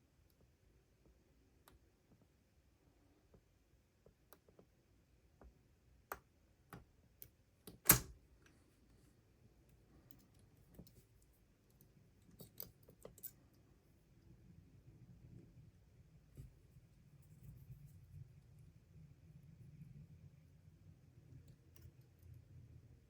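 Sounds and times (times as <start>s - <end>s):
lock pick clicking in padlock: 7.2s - 8.2s.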